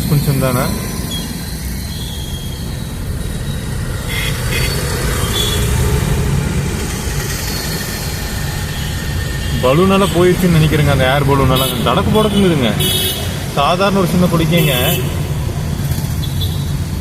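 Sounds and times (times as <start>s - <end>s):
bus engine rumble: 0.0s - 17.0s.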